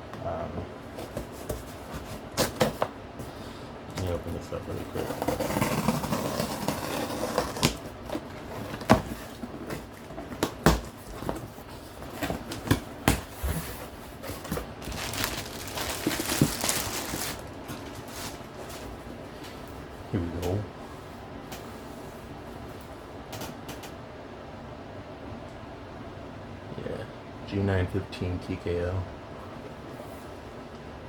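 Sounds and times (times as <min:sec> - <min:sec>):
packaging rustling: 0:11.2 - 0:19.1.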